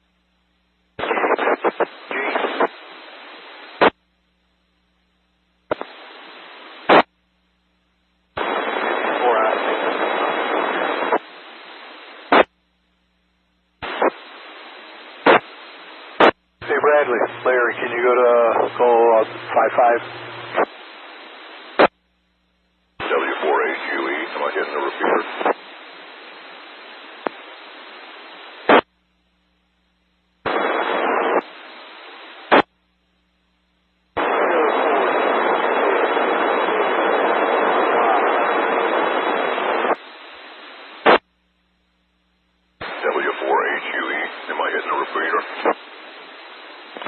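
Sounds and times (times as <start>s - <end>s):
radio static hiss: 0.0s - 47.0s
radio squelch tail burst: 1.0s - 2.8s, 13.8s - 14.6s, 15.2s - 20.9s, 23.0s - 25.8s, 34.2s - 40.2s.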